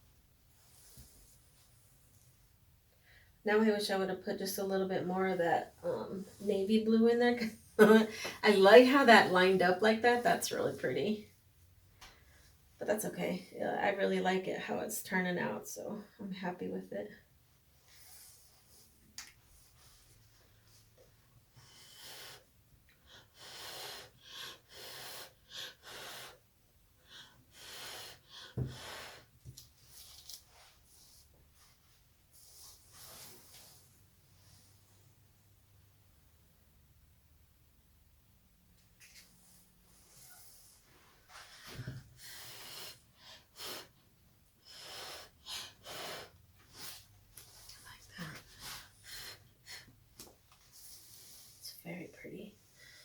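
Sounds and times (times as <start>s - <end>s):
breath puffs: 21.5s - 30.1s
puffs of blown air: 40.0s - 44.0s.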